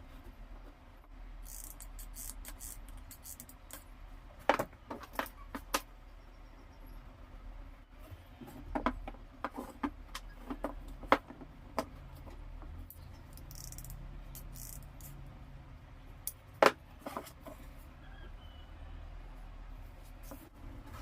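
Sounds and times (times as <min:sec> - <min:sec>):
small hard parts clicking and knocking: 0:01.4 - 0:05.9, 0:08.5 - 0:15.3.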